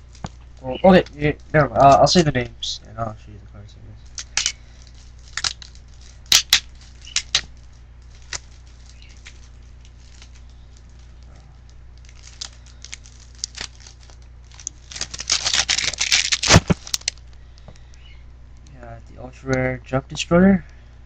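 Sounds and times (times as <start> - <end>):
packaging rustling and crackling: 0.0 - 2.1, 4.0 - 17.9.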